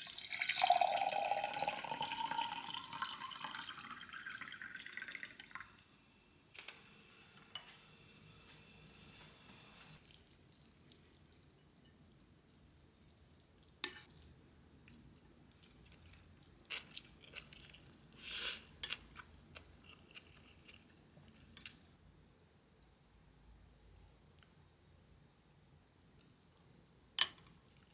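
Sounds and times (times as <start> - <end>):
food crunching: 15.5 - 21.8.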